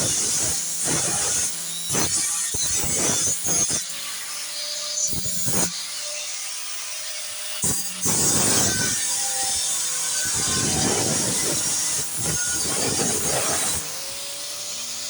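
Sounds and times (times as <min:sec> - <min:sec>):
metal grinding rasping strokes: 0:08.0 - 0:15.0.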